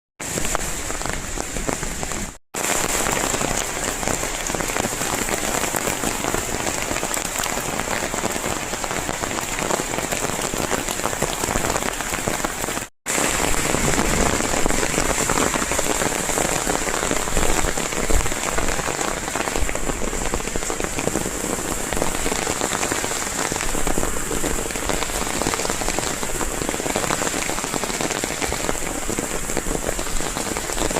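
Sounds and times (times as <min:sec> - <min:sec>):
hail and rain pelting down: 0:00.2 - 0:30.9.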